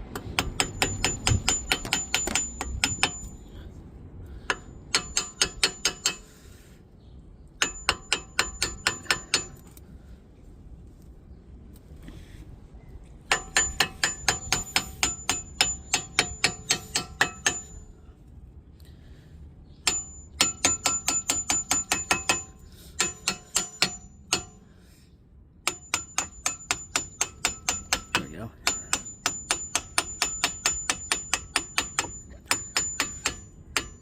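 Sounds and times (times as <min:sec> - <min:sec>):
hammer tapping metal: 0:00.1 - 0:03.4, 0:04.4 - 0:06.3, 0:07.6 - 0:09.7, 0:13.3 - 0:17.8, 0:19.8 - 0:24.6, 0:25.6 - 0:34.0.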